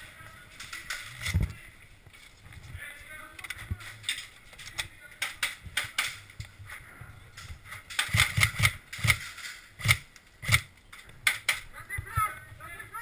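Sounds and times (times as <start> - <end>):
footsteps: 0.0 - 8.1.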